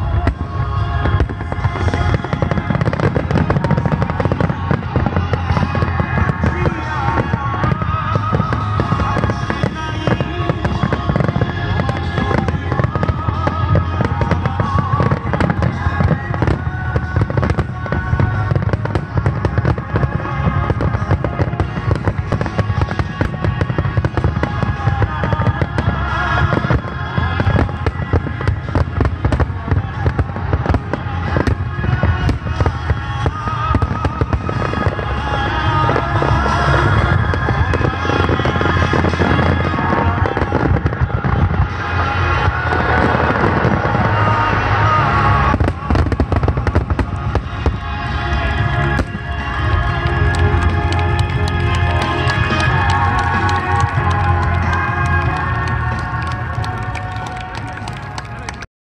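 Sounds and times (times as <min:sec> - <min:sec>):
fireworks bursting and crackling: 0:00.0 - 0:58.7
music playing: 0:00.0 - 0:58.7.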